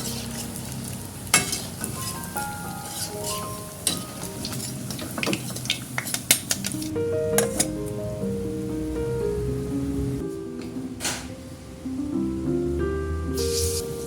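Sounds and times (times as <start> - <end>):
background music: 0.0 - 4.8, 6.6 - 14.0
food sizzling in a frying pan: 0.0 - 6.9
metal utensil clinking against pan: 1.3 - 7.8.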